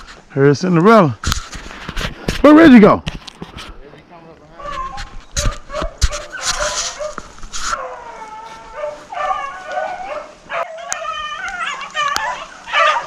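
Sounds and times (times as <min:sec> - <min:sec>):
rustling noise: 0:00.0 - 0:00.3, 0:01.0 - 0:13.0
dogs bawling and yipping: 0:04.6 - 0:13.0.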